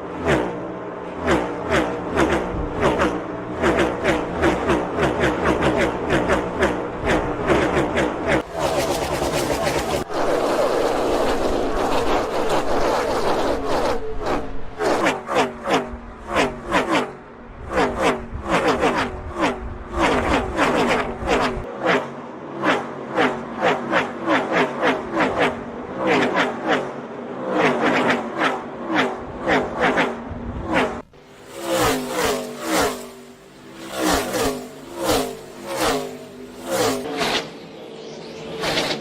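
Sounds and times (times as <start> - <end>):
race cars passing by: 0.0 - 39.0.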